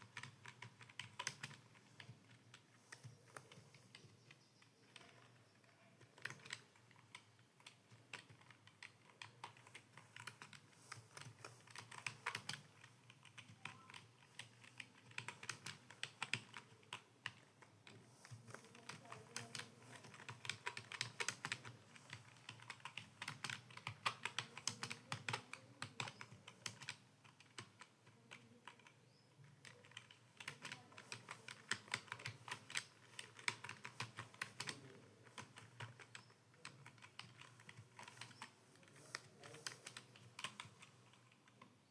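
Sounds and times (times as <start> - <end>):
keyboard typing: 0.0 - 41.8.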